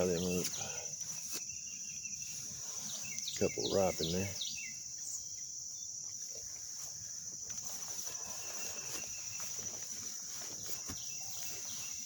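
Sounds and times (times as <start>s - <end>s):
insect chorus: 0.0s - 12.0s
footsteps rustling through plants: 2.1s - 4.4s, 6.1s - 12.0s.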